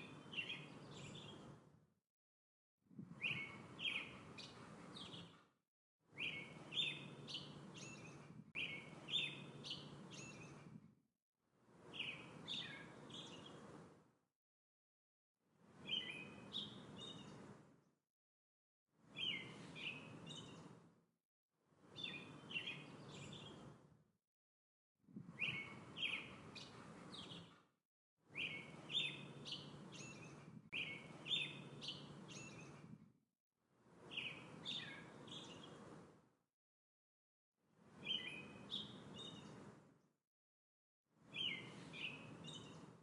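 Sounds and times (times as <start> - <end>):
songbird chirps: 0.0 - 1.7, 3.1 - 5.5, 6.1 - 10.8, 11.7 - 14.0, 15.7 - 17.8, 19.0 - 20.8, 21.8 - 23.8, 25.3 - 27.6, 28.3 - 33.0, 33.9 - 36.1, 37.9 - 39.8, 41.2 - 43.0.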